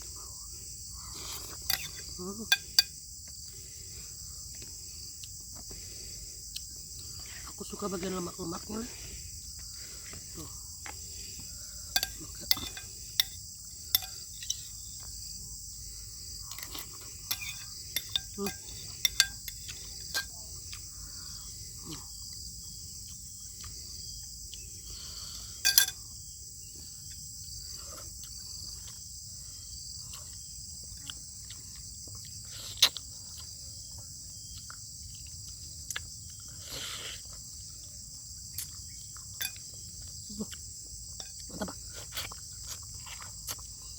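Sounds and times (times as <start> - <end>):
chewing and slurping: 1.1 - 3.0, 16.4 - 21.0, 30.0 - 33.5, 38.5 - 43.9
spoon clicking against bowl: 1.7 - 2.9, 12.0 - 13.4, 14.0 - 14.2, 16.6 - 20.3, 25.7 - 26.0, 39.4 - 39.6.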